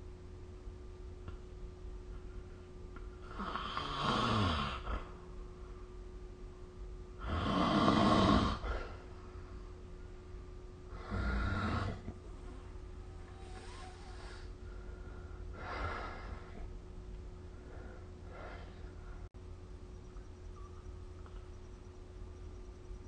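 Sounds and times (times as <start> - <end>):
person snoring: 3.2 - 5.1, 7.2 - 9.0, 10.9 - 12.1.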